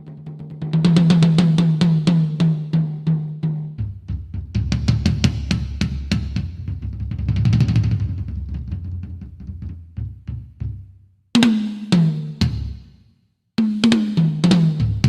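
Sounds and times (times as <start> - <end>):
drum hits and snare roll: 0.0 - 12.9, 13.6 - 15.0
deep bass booms: 3.8 - 10.9.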